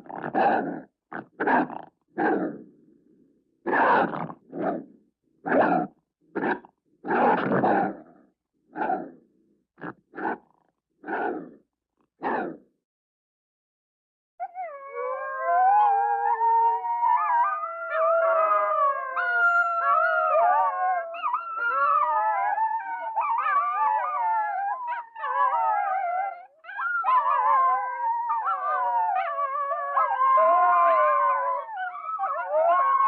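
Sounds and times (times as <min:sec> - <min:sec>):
wolves howling: 0:14.4 - 0:33.0.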